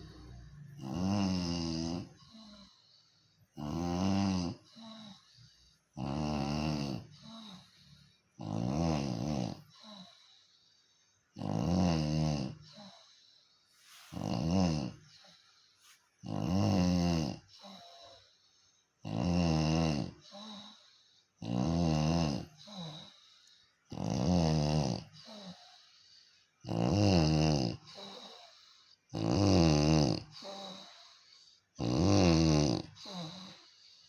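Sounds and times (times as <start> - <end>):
person snoring: 0.0 - 2.8, 3.6 - 5.3, 6.0 - 7.6, 8.4 - 10.1, 11.4 - 13.0, 14.0 - 15.2, 16.2 - 18.0, 19.0 - 20.7, 21.4 - 23.1, 23.9 - 25.6, 26.7 - 28.5, 29.1 - 31.0, 31.8 - 33.6.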